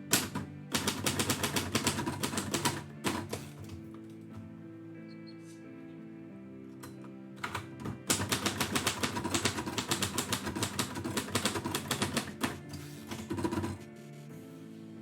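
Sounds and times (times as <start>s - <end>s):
typewriter keys striking: 0.0s - 3.8s, 7.4s - 13.8s
faint background music: 0.0s - 15.0s.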